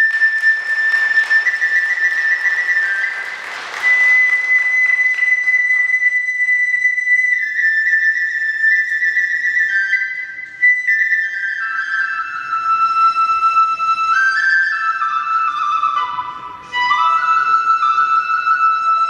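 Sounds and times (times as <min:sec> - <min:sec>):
audience applause: 0:00.0 - 0:06.1
bamboo flute melody: 0:00.0 - 0:19.0.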